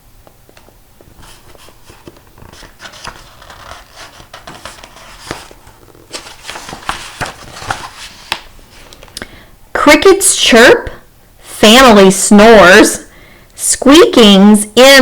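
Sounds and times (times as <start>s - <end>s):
paper pages rustling: 0.6s - 9.2s.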